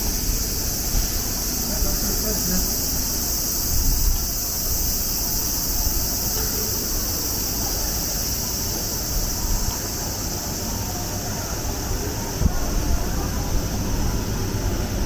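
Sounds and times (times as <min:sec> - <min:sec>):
wind buffeting microphone: 0:00.0 - 0:06.3
steady high-pitched hiss: 0:00.0 - 0:15.0.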